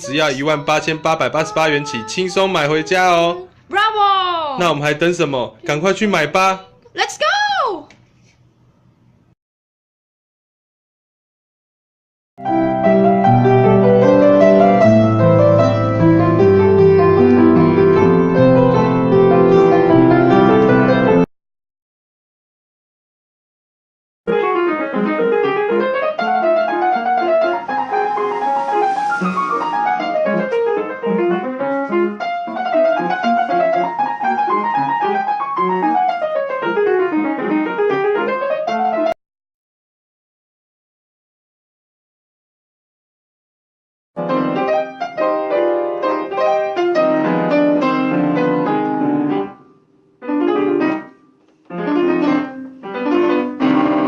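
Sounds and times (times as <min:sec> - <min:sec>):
piano melody over chords: 0:12.4 - 0:21.3, 0:24.3 - 0:39.2, 0:44.2 - 0:54.0.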